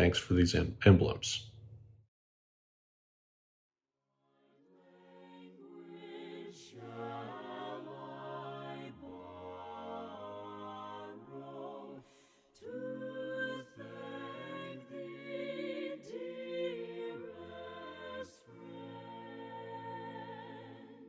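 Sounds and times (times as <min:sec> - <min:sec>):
a cappella choir singing a hymn: 0:04.6 - 0:21.0.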